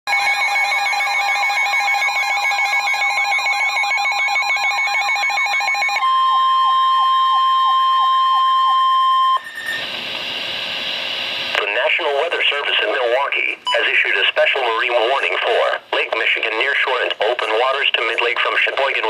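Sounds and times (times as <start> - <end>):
steady single-pitch alarm tone: 0.1 - 11.4
warbling electronic alarm: 0.1 - 11.4
radio hiss: 9.8 - 19.0.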